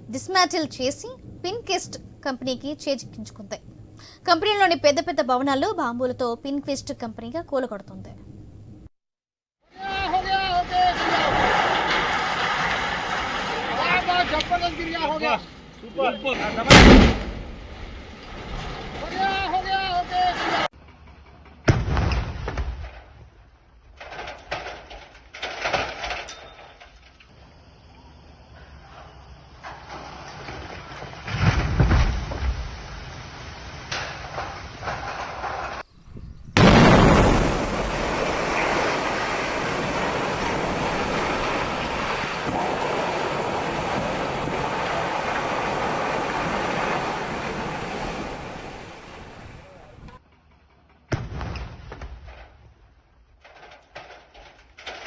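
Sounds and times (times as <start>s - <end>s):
low steady background: 0.0s - 8.9s
building collapse roar: 9.9s - 15.4s, 16.3s - 20.7s, 36.6s - 50.2s
demolition blast rumble: 16.4s - 19.2s, 36.6s - 50.2s
bursts of rushing noise: 36.6s - 49.6s.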